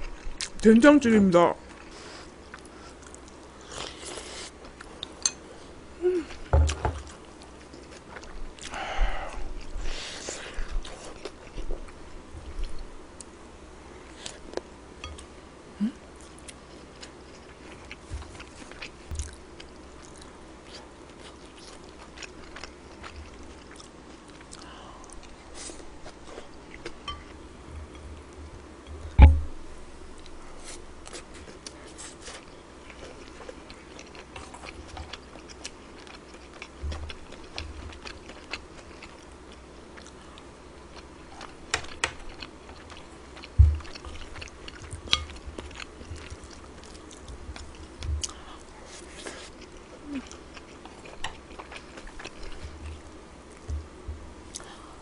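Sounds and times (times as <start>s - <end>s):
person chewing food: 1.6s - 13.4s, 16.1s - 29.2s, 30.1s - 55.0s
sharp knocks: 29.2s - 29.5s.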